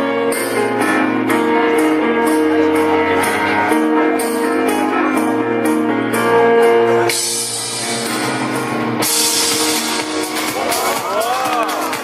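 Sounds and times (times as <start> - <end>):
rock music with guitar and drums: 0.0 - 12.0.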